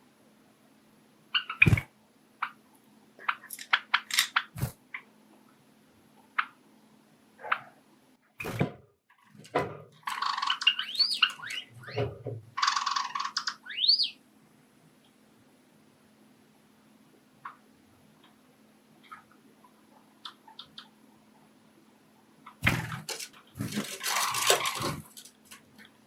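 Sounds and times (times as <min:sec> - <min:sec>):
sparrows clicking and chirping: 0:10.0 - 0:12.0, 0:12.6 - 0:14.1
bird song with whistles: 0:10.7 - 0:11.7, 0:13.6 - 0:14.2.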